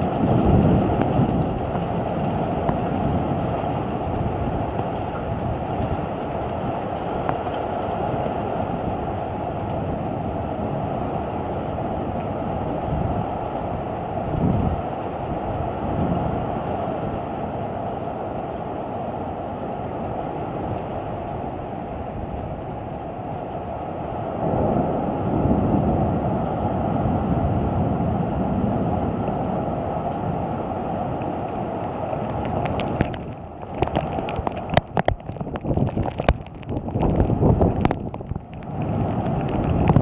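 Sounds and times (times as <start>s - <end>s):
heavy rain: 0.0s - 40.0s
wind roaring: 0.0s - 40.0s
sharp clicks and pops: 32.3s - 40.0s.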